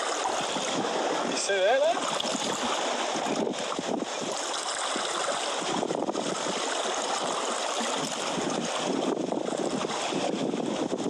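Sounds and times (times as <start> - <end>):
water washing against rocks: 0.0 - 11.0.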